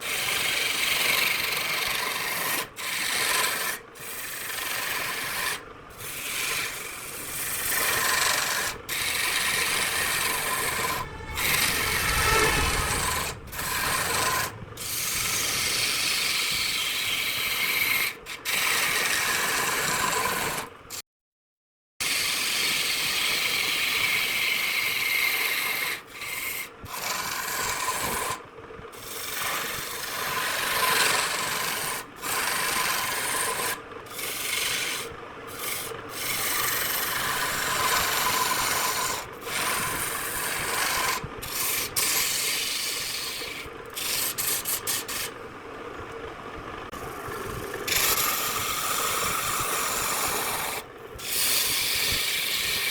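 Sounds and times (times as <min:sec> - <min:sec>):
tool scraping wood on lathe: 0:00.5 - 0:18.1, 0:30.3 - 0:45.4, 0:47.9 - 0:52.9.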